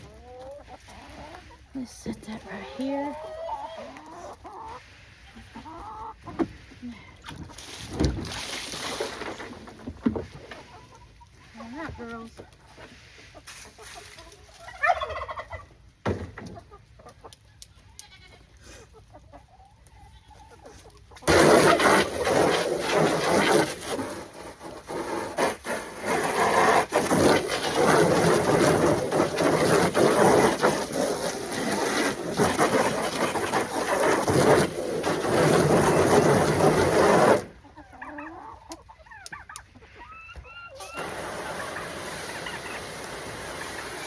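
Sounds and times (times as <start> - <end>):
hens clucking faintly: 0.0 - 7.6, 9.4 - 44.0
garden hose spraying water: 40.8 - 44.0.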